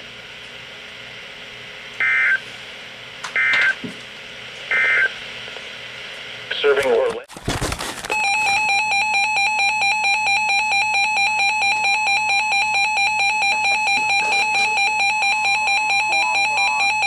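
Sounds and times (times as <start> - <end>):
two-tone alarm signal: 8.2 - 17.0.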